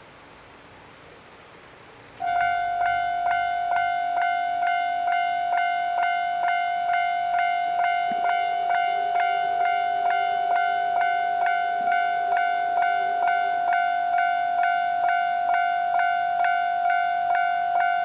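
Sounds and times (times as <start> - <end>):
faint steady low tone: 2.2 - 18.0
level-crossing bell ringing: 2.2 - 18.0.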